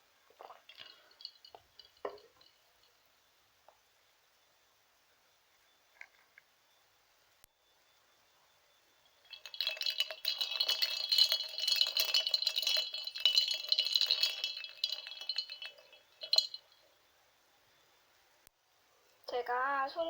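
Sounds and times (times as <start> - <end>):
ice cubes clinking in water: 0.4 - 2.5, 9.2 - 16.8.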